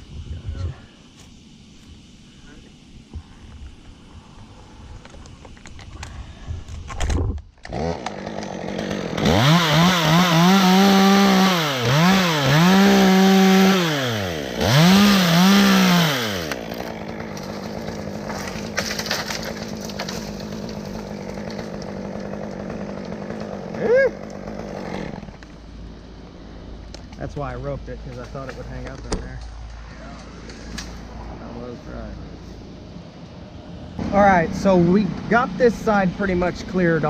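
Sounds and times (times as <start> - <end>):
chainsaw revving and idling: 7.6 - 26.1.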